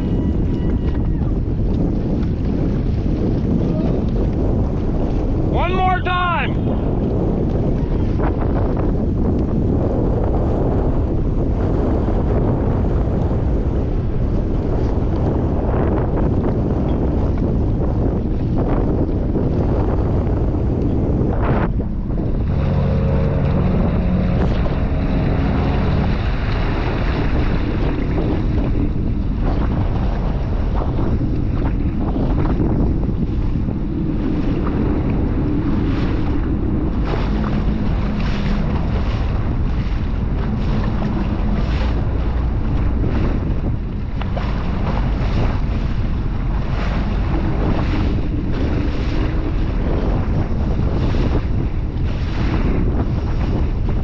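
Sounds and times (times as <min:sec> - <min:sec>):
jet ski engine drone: 0:00.0 - 0:54.0
wind buffeting microphone: 0:00.0 - 0:54.0
water splashing: 0:20.0 - 0:54.0.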